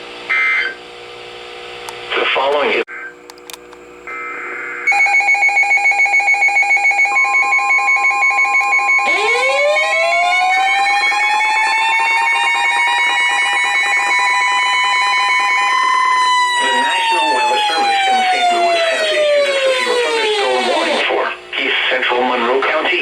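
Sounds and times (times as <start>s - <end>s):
rapid beeping alarm: 4.9s - 21.1s
siren winding up: 4.9s - 21.2s
steady high tone: 4.9s - 21.5s.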